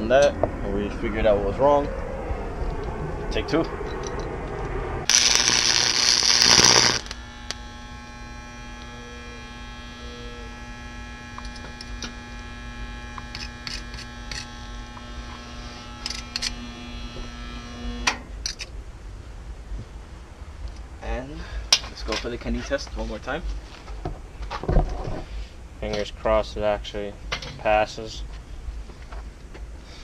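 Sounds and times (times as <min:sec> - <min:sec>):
welder electrical hum: 0:00.0 - 0:21.0
welding arc crackling: 0:05.0 - 0:18.1.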